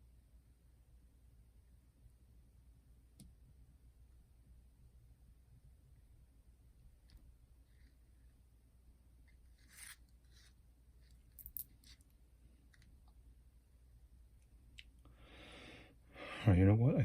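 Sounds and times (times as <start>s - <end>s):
small tools scraping and clicking: 11.3s - 12.0s.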